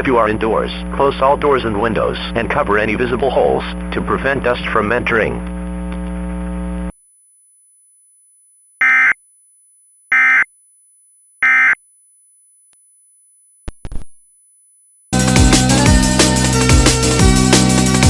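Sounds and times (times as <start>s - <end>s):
music with steady drum beat: 15.2s - 18.0s.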